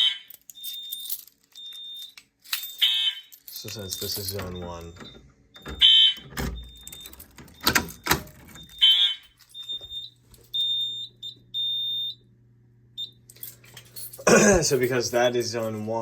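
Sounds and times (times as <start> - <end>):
fire alarm horn blasts: 0.0 - 1.0, 2.7 - 3.4, 4.6 - 7.1, 8.6 - 12.2.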